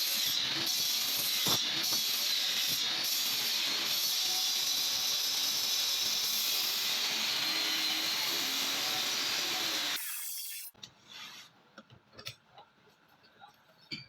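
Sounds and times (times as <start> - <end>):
table saw cutting wood: 0.0 - 10.7.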